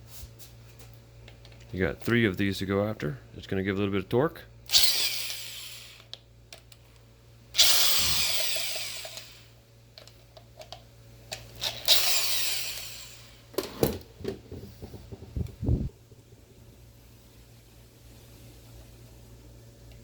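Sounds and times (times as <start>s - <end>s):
power drill running: 4.7s - 6.1s, 7.6s - 9.6s, 11.6s - 13.5s
sharp knocks and clicks: 13.6s - 15.6s.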